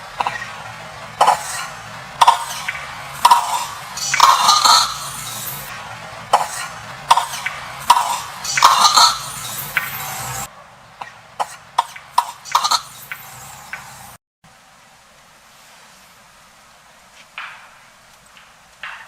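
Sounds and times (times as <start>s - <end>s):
monkey coughing: 0.2s - 13.3s.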